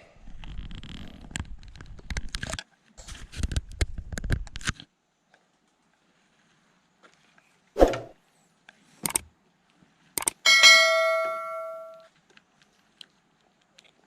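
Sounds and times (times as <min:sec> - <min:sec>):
crackling rustling handling noise: 0:11.9 - 0:14.0.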